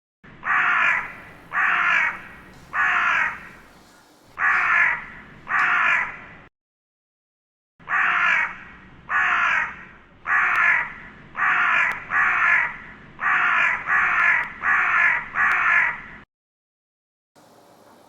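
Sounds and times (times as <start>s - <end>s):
crow-like cawing: 0.4s - 6.4s, 7.8s - 16.2s.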